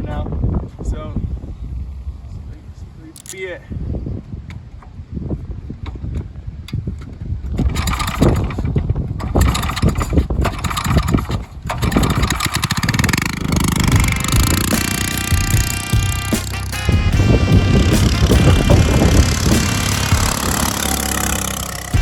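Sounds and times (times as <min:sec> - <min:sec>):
single-cylinder engine revving: 0:09.2 - 0:22.0.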